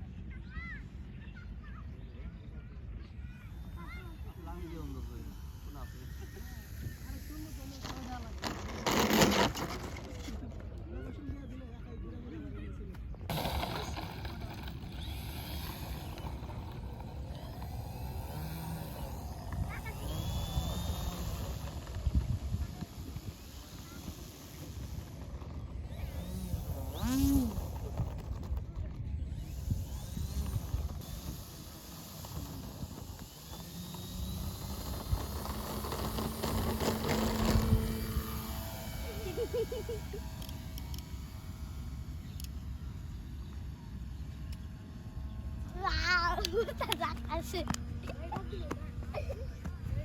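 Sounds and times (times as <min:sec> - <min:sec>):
model airplane motor drone: 0:01.9 - 0:50.0
wind buffeting microphone: 0:13.3 - 0:41.6.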